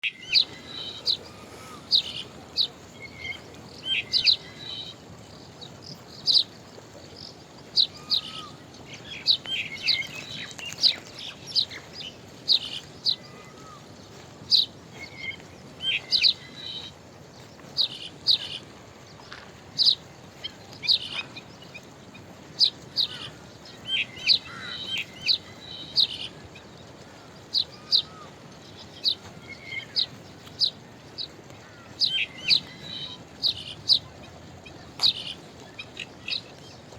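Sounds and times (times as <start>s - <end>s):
birds chirping: 0.0s - 36.9s
low background hiss: 0.0s - 36.9s.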